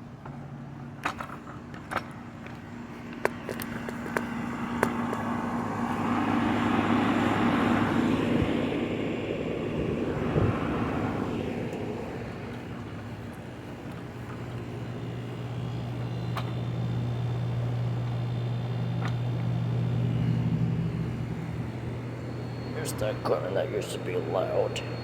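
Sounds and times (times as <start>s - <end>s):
vehicle passing by: 3.8s - 15.1s.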